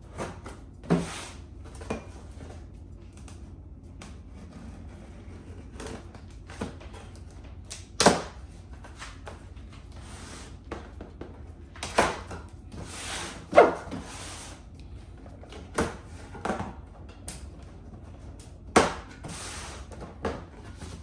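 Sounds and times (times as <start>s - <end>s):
cardboard sliding: 0.8s - 1.4s.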